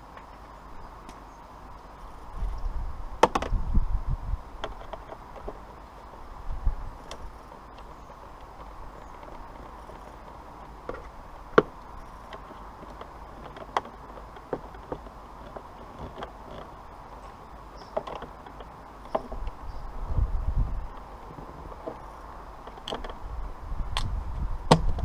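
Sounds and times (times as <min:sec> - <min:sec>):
steady background noise: 0:00.0 - 0:25.0
hand tools clicking and knocking: 0:07.0 - 0:19.5.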